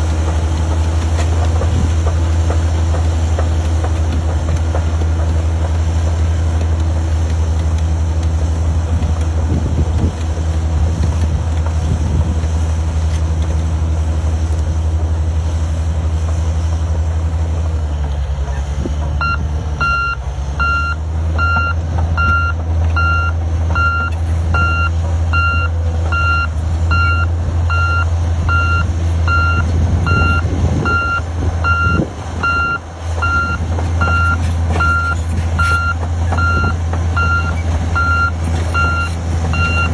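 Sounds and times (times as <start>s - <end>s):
diesel engine running: 0.0s - 39.9s
reversing alarm beeping: 19.2s - 39.9s.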